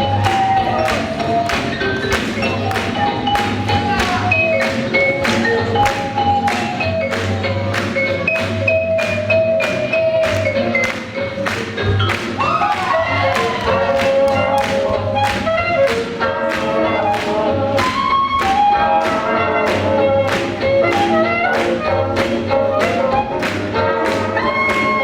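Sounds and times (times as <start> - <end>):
swing jazz music: 0.0 - 25.0.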